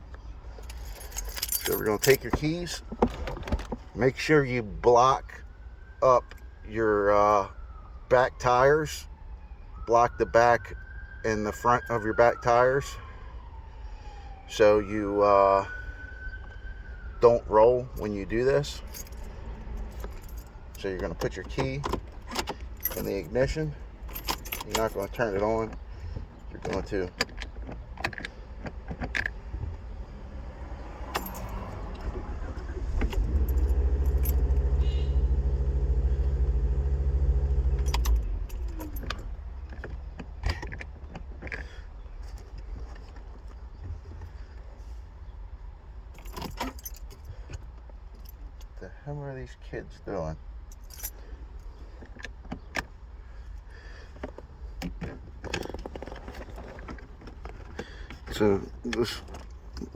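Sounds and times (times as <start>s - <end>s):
car keys jangling: 0.5s - 4.2s, 18.0s - 29.4s, 31.0s - 41.6s, 46.2s - 48.8s, 50.7s - 52.9s, 54.8s - 59.9s
low steady hum: 0.6s - 2.5s.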